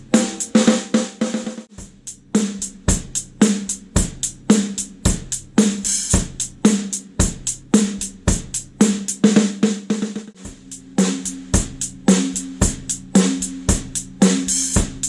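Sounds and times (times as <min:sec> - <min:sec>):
cymbals: 0:00.0 - 0:09.2
snare drum ringing: 0:00.1 - 0:01.7
kick drum: 0:01.8 - 0:02.1, 0:05.1 - 0:05.4, 0:10.4 - 0:10.7.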